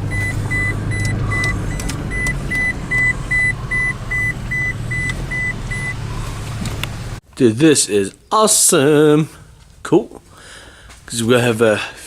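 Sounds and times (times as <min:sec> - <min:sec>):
vehicle warning chime beeping: 0:00.0 - 0:06.3
car engine idling: 0:00.0 - 0:07.2.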